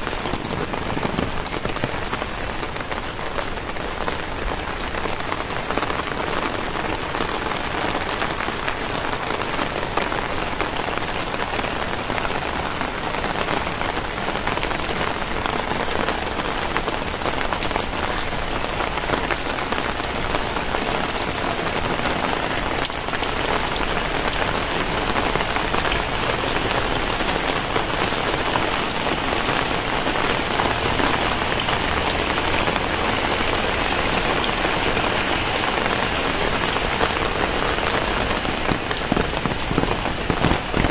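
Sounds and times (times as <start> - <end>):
heavy rain pouring: 0.0 - 40.9.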